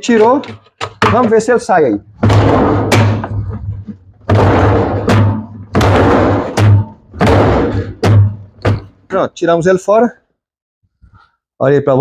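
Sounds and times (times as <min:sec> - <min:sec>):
rattling scraping thuds: 0:00.0 - 0:09.1.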